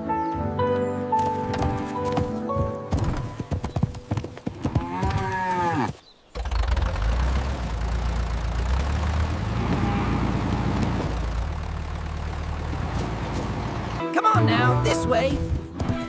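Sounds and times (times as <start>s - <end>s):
cow mooing: 4.6s - 6.0s, 9.4s - 10.8s.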